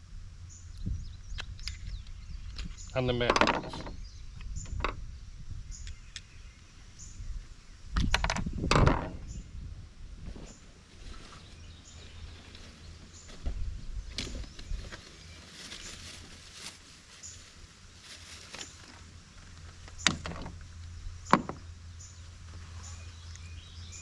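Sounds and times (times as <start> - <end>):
low background rumble: 0.0 - 24.0.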